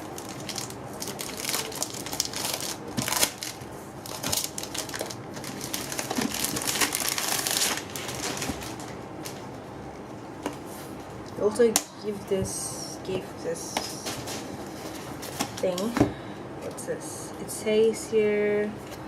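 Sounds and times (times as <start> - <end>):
packaging crinkling and rustling: 0.0 - 9.6.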